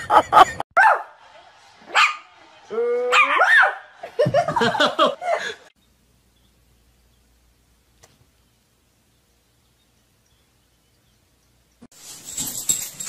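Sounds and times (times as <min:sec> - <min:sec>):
dog yelping and barking: 0:03.1 - 0:03.9.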